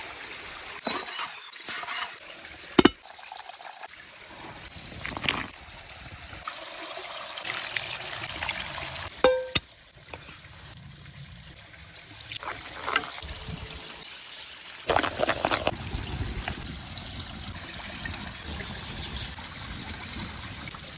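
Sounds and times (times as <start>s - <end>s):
water trickling: 10.8s - 20.3s
water splashing: 12.2s - 14.0s, 14.8s - 16.9s.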